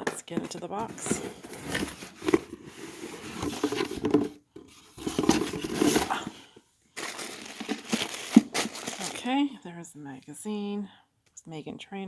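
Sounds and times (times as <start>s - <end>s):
cardboard box packaging rustling: 0.0s - 9.4s.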